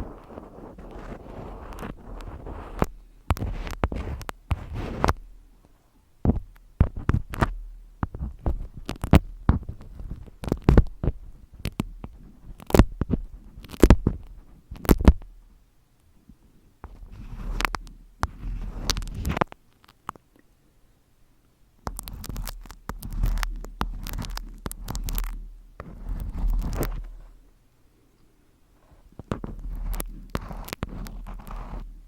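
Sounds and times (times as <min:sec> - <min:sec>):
dense crackling: 0:00.0 - 0:05.4, 0:06.2 - 0:15.4, 0:21.8 - 0:27.4, 0:29.0 - 0:32.0.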